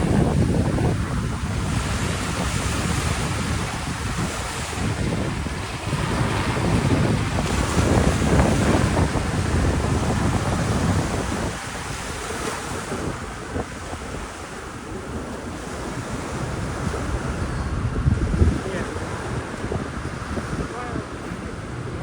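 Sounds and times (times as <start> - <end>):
ocean surf breaking on beach: 0.0 - 22.0
wind buffeting microphone: 0.0 - 22.0.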